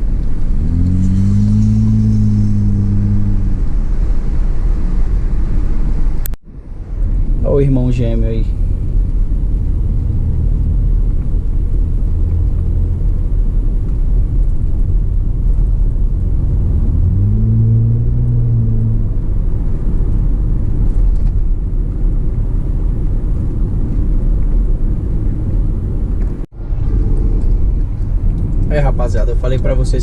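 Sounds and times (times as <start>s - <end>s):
car exhaust rumbling: 0.0s - 30.0s
engine note rising: 0.5s - 6.4s, 16.2s - 19.5s.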